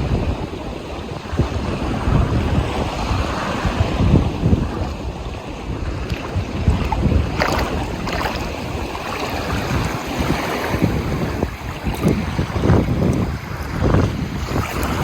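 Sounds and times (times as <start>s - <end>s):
ocean waves splashing: 0.0s - 15.0s
wind buffeting microphone: 0.0s - 15.0s.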